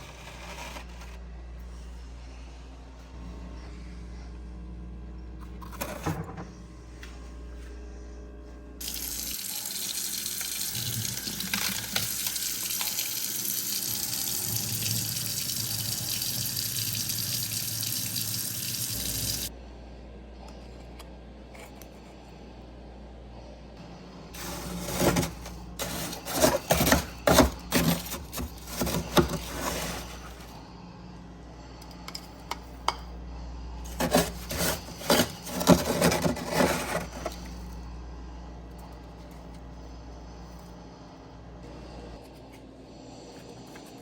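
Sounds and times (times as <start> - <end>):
water tap running: 8.8 - 19.5.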